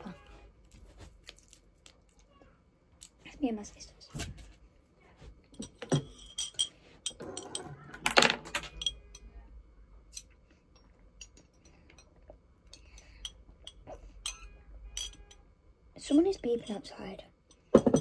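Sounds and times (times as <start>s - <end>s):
tableware clattering: 5.5s - 9.2s, 13.6s - 15.4s, 17.5s - 18.0s
clicks and clinks of tableware: 5.6s - 9.3s.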